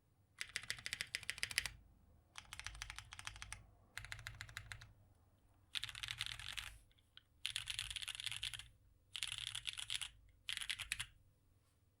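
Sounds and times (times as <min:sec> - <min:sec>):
fast mechanical keyboard typing: 0:00.4 - 0:01.8, 0:02.4 - 0:04.9, 0:05.7 - 0:06.8, 0:07.4 - 0:11.1.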